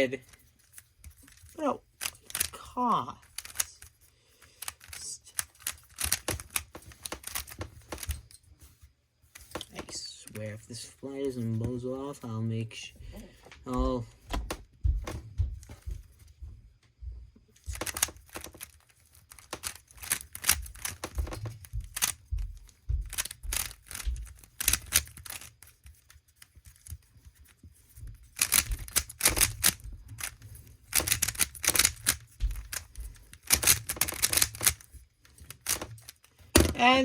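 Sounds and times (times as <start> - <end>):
plastic puzzle cube clicking: 0.2 - 8.2, 17.6 - 22.2, 23.1 - 27.1, 28.2 - 37.0.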